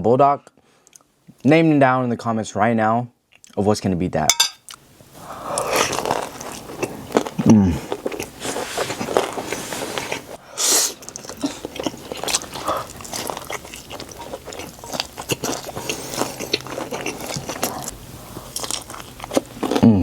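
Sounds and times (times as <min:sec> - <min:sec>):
person chewing food: 0:04.7 - 0:19.9.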